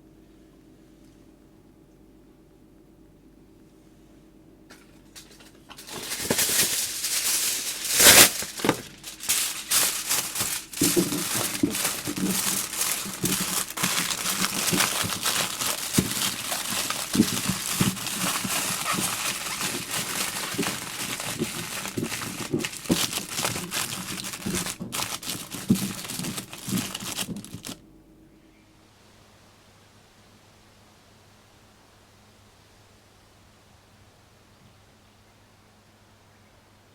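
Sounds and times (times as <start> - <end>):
aluminium foil crinkling: 4.7 - 27.8.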